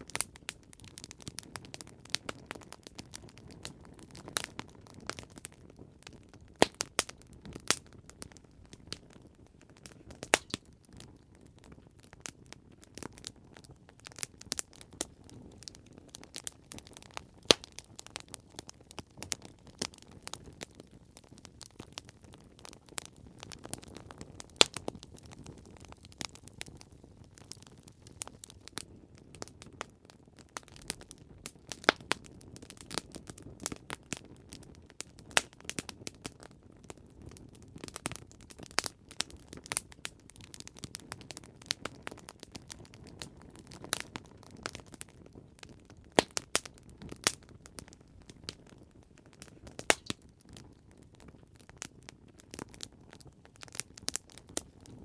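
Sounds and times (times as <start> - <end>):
campfire crackling: 0.0 - 55.0.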